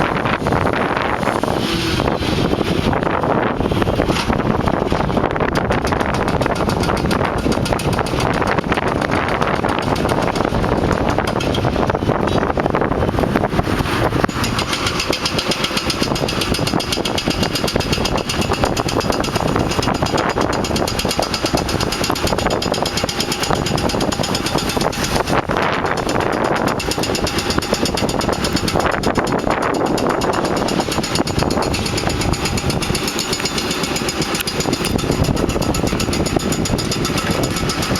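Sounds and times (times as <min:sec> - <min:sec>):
heavy machine engine running: 0:00.0 - 0:37.9
power breaker hammering concrete: 0:00.0 - 0:37.9.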